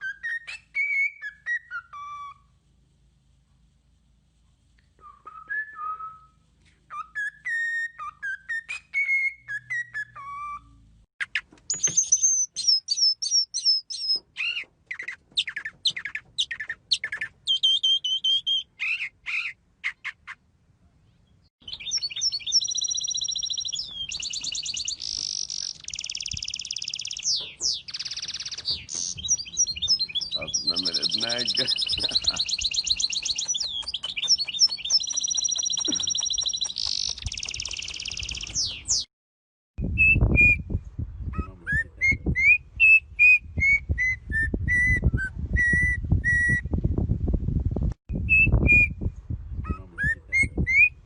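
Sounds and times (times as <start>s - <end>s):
bird song whistled phrases: 0.0s - 2.4s, 5.0s - 10.8s, 11.7s - 20.2s, 21.6s - 39.1s, 39.8s - 46.6s, 48.2s - 51.0s
bird buzzy trill: 21.7s - 39.1s.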